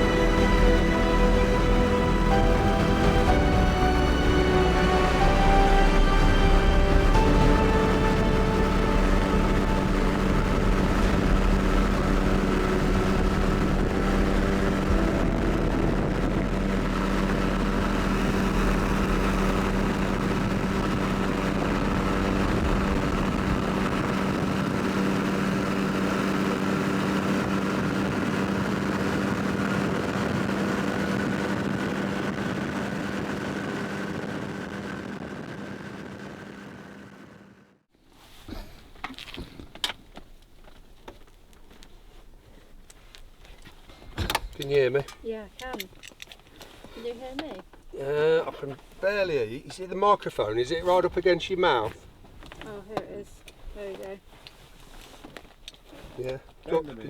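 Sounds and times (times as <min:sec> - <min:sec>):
light aircraft engine drone: 0:00.0 - 0:37.6.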